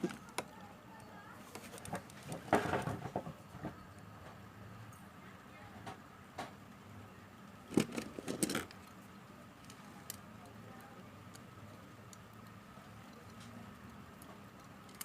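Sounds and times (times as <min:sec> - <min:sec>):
small hard parts clicking and rattling: 0:00.0 - 0:04.4, 0:07.5 - 0:15.0
low steady hum: 0:00.0 - 0:15.0.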